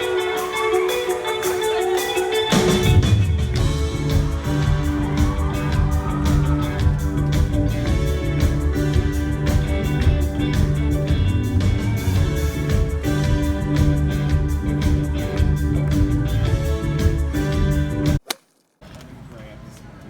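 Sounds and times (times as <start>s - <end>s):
live rock band playing: 0.0s - 18.2s.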